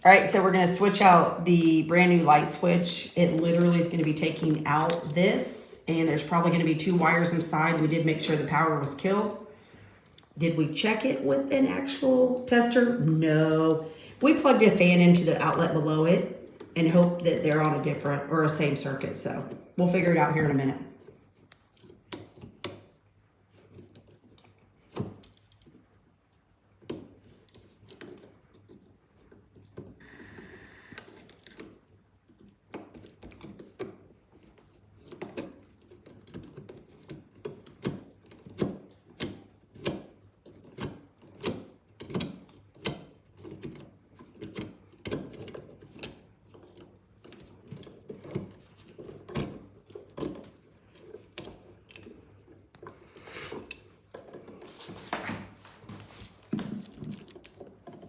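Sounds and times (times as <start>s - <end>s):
screwdriver clicks and scrapes: 0.7s - 5.2s, 30.9s - 55.1s.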